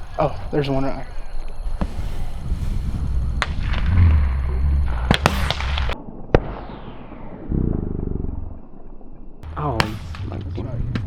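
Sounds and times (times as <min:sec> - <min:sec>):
low rumble: 0:00.0 - 0:11.0
shotgun shots: 0:03.4 - 0:07.4, 0:09.6 - 0:11.0.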